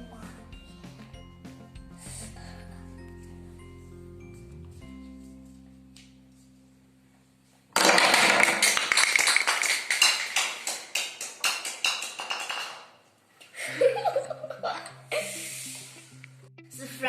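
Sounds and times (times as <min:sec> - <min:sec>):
toy bowling pins clattering: 0:07.8 - 0:13.0.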